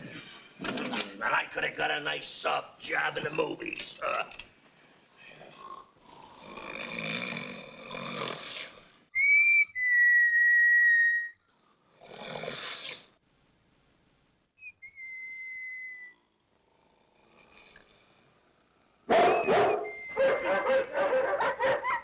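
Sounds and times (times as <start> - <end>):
man snoring: 5.6 - 8.9, 11.9 - 13.0, 16.6 - 18.1
high steady whistle: 9.2 - 11.4, 14.6 - 16.2, 19.1 - 20.8.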